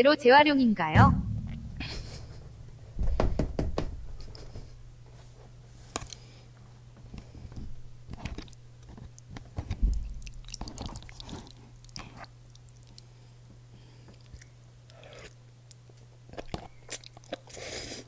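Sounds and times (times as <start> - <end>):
low thump: 1.0 - 4.4
chewing food: 14.1 - 18.0.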